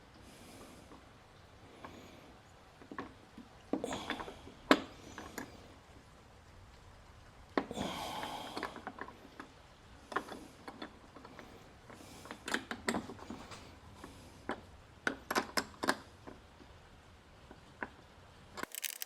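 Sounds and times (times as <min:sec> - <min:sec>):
ratchet wrench clicking: 0:18.6 - 0:19.0.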